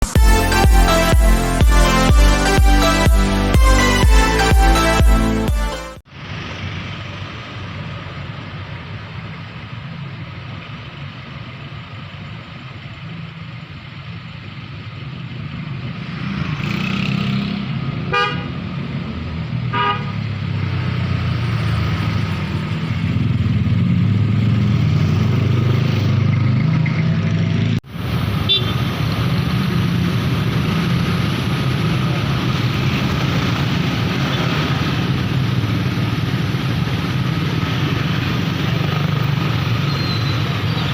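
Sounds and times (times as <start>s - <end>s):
vehicle engines passing: 0.0s - 40.9s
car horn toots: 18.1s - 18.5s.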